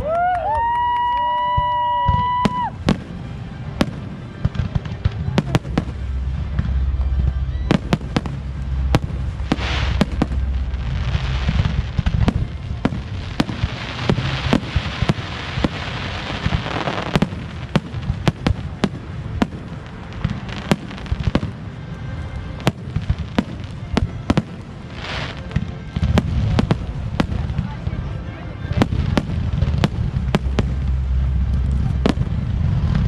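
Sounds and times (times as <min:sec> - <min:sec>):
fireworks bursting bangs: 0:01.5 - 0:28.0, 0:28.7 - 0:33.0
crackling hiss: 0:04.2 - 0:27.8.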